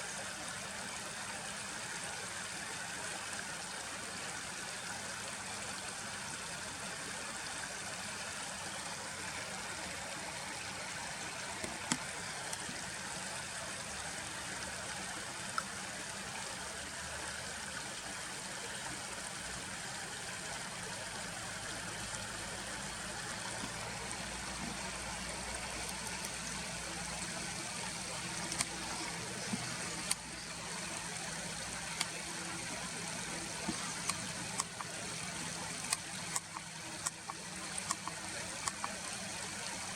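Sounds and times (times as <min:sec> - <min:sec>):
stream water flowing: 0:00.0 - 0:39.9
faint sharp clicks: 0:24.5 - 0:39.2.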